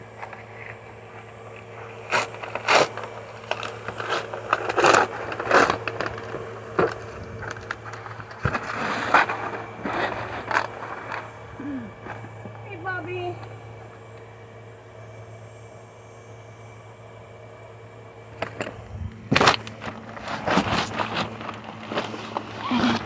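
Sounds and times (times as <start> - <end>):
steady low hum: 0.0 - 23.0
scraping and rustling: 0.2 - 11.4, 18.4 - 23.0.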